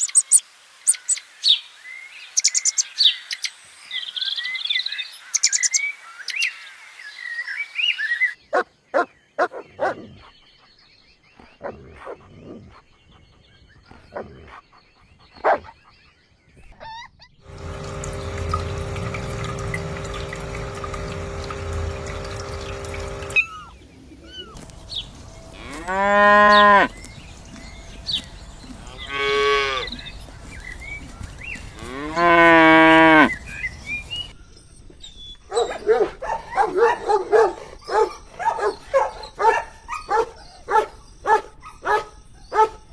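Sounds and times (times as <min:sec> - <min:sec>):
steady hum with low rumble: 0:17.5 - 0:23.7.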